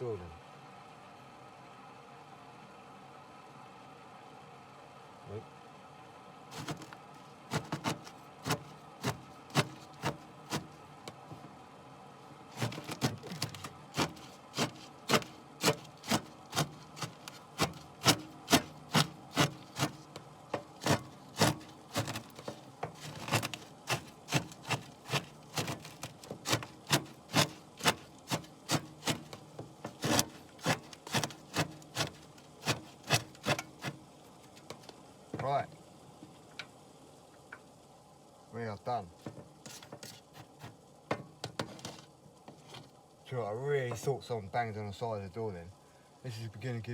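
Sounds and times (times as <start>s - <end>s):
utensil scraping in plastic pot: 6.5s - 11.5s, 12.5s - 35.6s, 39.2s - 40.8s, 41.4s - 42.9s.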